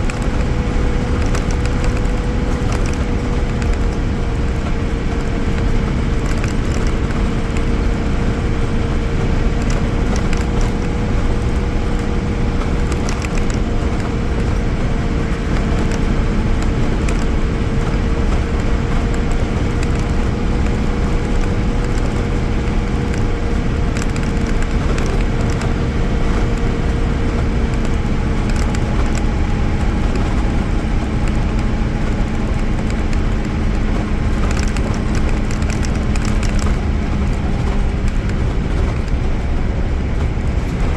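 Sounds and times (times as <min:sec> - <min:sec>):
bus body rattling and clicking: 0:00.0 - 0:40.9
bus diesel engine running: 0:00.0 - 0:40.9.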